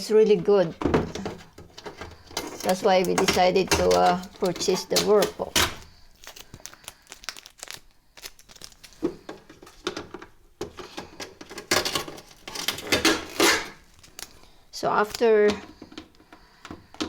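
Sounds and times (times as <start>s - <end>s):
packaging crinkling and tearing: 1.2s - 10.3s, 11.1s - 15.3s.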